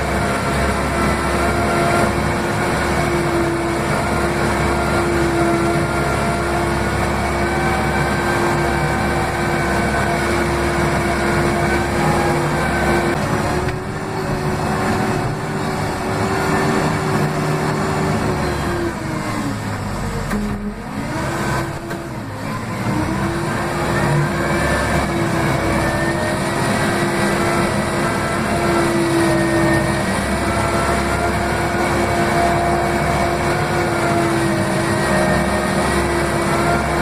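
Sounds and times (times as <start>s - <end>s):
diesel engine running hard: 0.0s - 37.0s.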